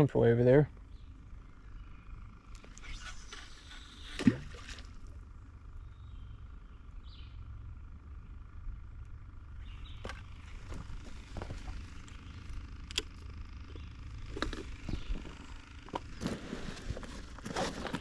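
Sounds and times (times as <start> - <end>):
low outdoor rumble: 0.0 - 18.0
light rustle: 14.2 - 18.0.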